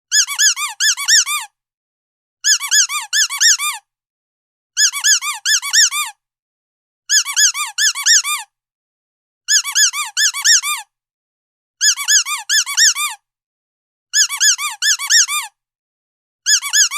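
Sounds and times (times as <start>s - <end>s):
squeaky dog toy: 0.1s - 1.6s, 2.4s - 3.9s, 4.8s - 6.2s, 7.1s - 8.6s, 9.5s - 10.9s, 11.8s - 13.3s, 14.2s - 15.6s, 16.5s - 16.9s.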